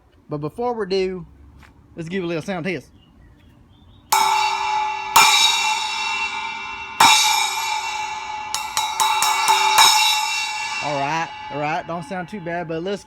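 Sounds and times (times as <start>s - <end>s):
light cymbal taps: 4.2s - 13.0s
splash cymbal hits ringing: 4.2s - 13.0s.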